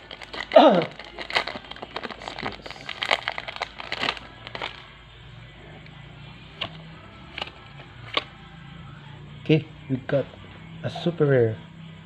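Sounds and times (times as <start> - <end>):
foil wrapper crinkling and tearing: 0.0 - 4.9
cards clicking: 6.5 - 8.3.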